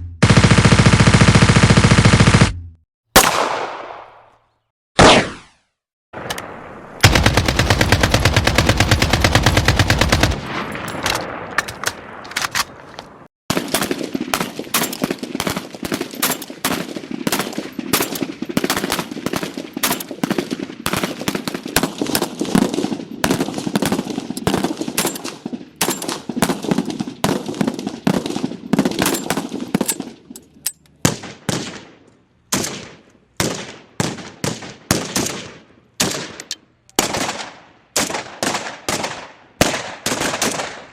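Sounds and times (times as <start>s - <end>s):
single gunshots with ringing tail: 3.2s - 4.3s
automatic gunfire: 7.0s - 10.7s.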